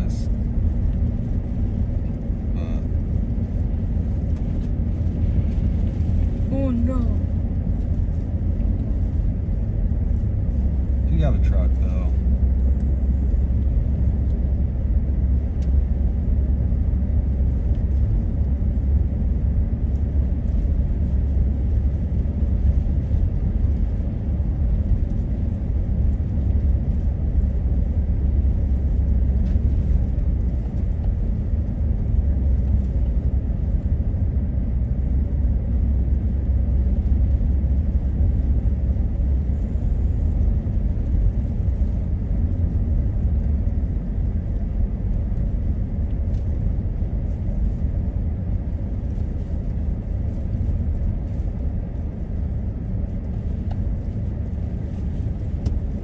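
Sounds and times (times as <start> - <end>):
truck engine and tyre rumble: 0.0 - 56.0.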